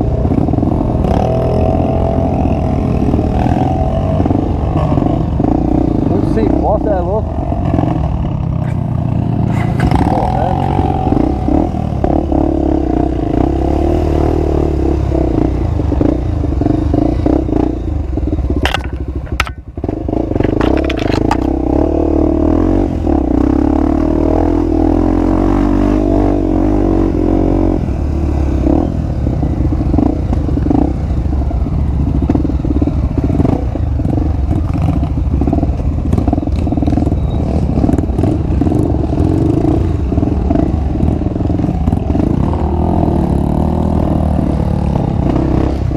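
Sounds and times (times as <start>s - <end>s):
motorcycle engine running: 0.0s - 13.7s, 14.4s - 24.0s, 26.6s - 45.9s
clattering and scraping: 18.6s - 19.7s, 20.3s - 21.6s
sharp knocks: 18.6s - 19.7s.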